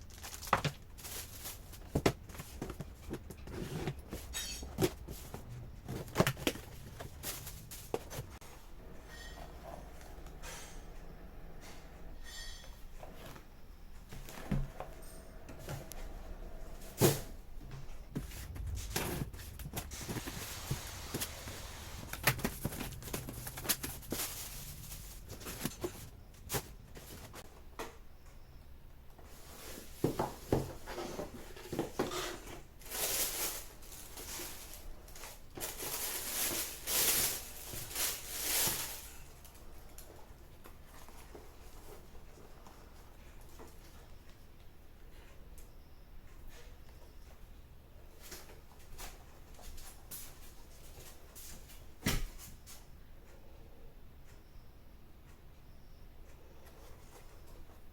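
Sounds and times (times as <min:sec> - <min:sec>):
rustling: 0:00.0 - 0:27.5, 0:29.2 - 0:43.9.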